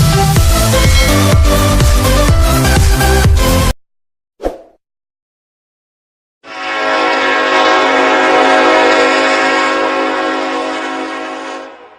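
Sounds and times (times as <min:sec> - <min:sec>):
train horn blast: 0:06.4 - 0:11.9.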